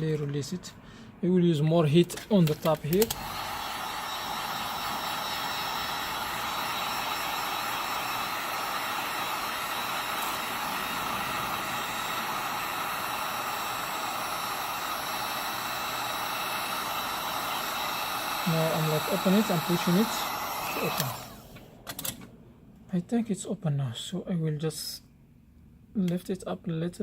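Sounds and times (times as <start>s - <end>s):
hot-air gun blowing: 2.0s - 21.6s.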